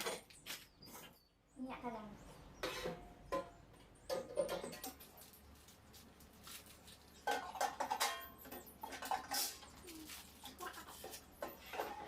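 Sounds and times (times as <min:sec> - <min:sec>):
rustling and clattering of items: 0:02.6 - 0:12.0.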